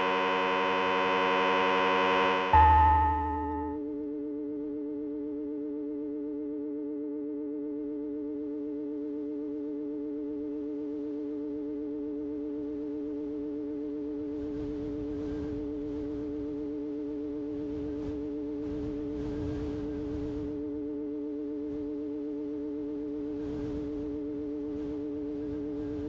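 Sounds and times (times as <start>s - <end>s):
synthesized warbling drone: 0.0s - 3.8s.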